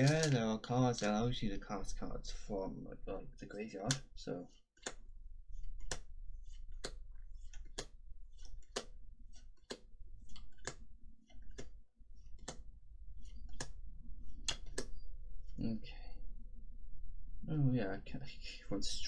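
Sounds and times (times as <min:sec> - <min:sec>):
trading cards snapping: 0:00.0 - 0:01.1, 0:03.8 - 0:04.1, 0:04.8 - 0:05.0, 0:05.8 - 0:10.8, 0:13.4 - 0:13.8, 0:14.4 - 0:14.9
faint rustling of cards: 0:00.0 - 0:15.9.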